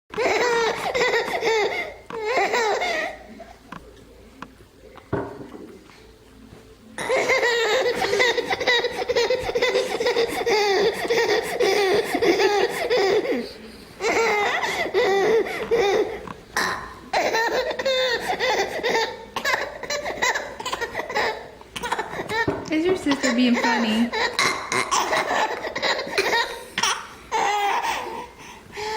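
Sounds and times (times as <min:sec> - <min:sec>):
baby laughing: 0:00.2 - 0:03.4, 0:07.0 - 0:16.2, 0:17.1 - 0:28.9
fake burping: 0:16.6 - 0:17.0.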